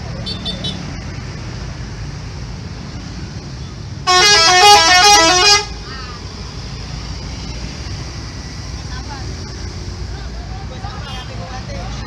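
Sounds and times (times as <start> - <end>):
bus horn melody: 4.0 - 5.8.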